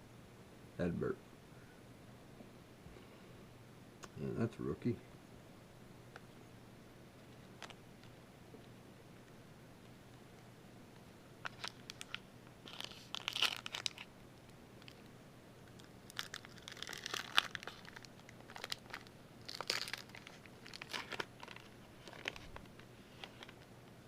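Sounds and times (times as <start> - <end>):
wrapper crinkling and tearing: 11.4 - 14.1, 15.7 - 23.6.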